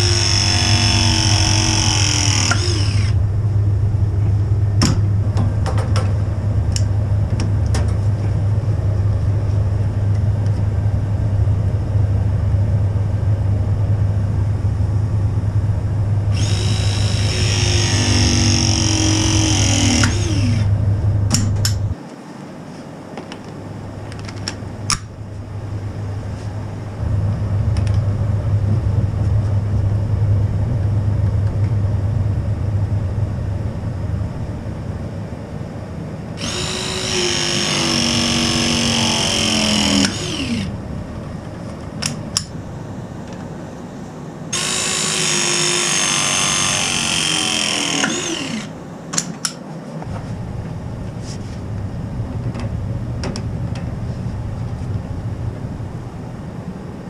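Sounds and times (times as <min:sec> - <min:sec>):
pressing tool motor whine: 0:00.0 - 0:03.2, 0:16.3 - 0:20.8, 0:36.4 - 0:40.8, 0:44.5 - 0:48.7
low steady hum: 0:00.0 - 0:57.0.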